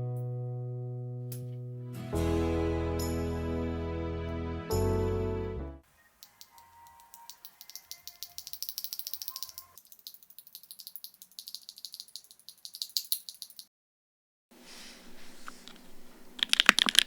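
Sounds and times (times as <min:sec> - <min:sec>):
small plastic parts rattling: 0:06.2 - 0:13.6, 0:15.7 - 0:17.0.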